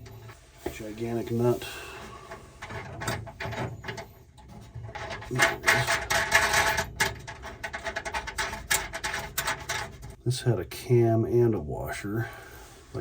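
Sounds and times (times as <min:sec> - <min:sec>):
lock hardware clicking and rattling: 0:02.3 - 0:10.2.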